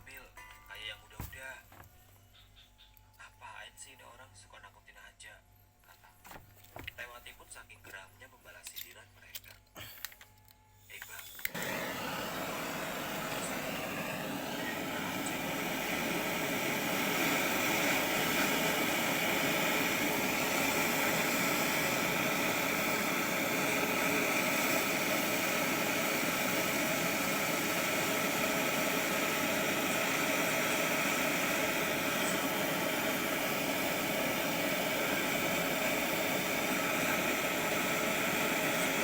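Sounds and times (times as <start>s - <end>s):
steady hissing rush: 11.0s - 39.0s.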